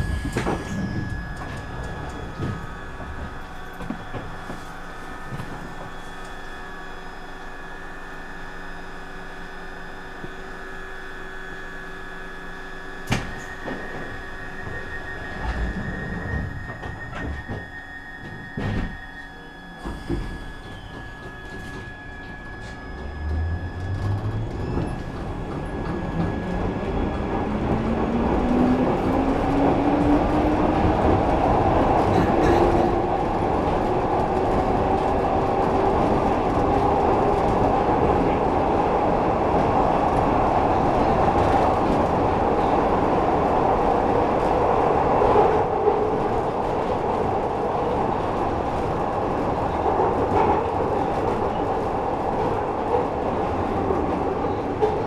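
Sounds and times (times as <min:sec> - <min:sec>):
train motor whine: 0:00.0 - 0:43.2
train rumbling and rattling on track: 0:00.0 - 0:55.0.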